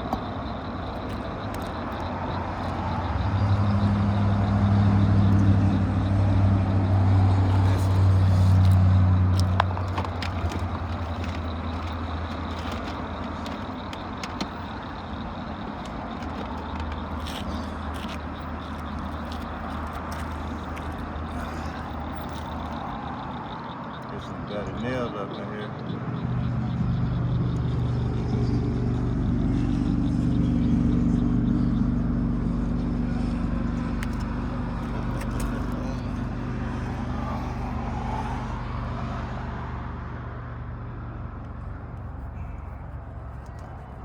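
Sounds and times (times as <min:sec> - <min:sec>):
vehicle passing by: 0:16.6 - 0:44.0.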